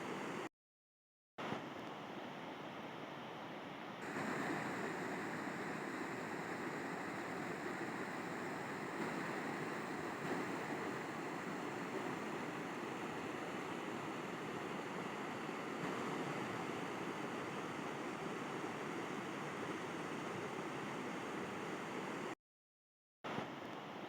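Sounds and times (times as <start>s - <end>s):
river water rushing: 4.0s - 22.3s.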